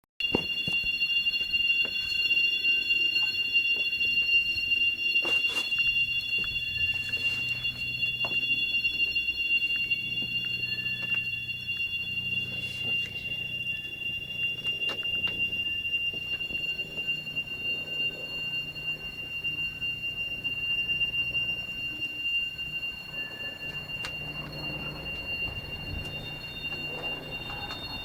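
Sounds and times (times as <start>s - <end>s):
low hum: 5.7s - 28.0s.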